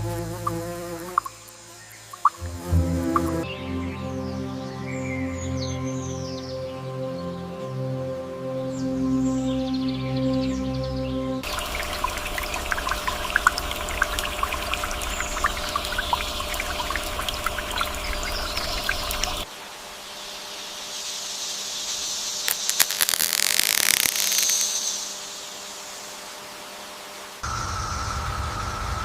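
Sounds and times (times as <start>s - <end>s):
crackling water splashes: 0.0s - 2.5s, 11.4s - 19.5s, 22.4s - 24.9s
water trickling and dripping: 0.0s - 3.4s, 11.4s - 19.5s.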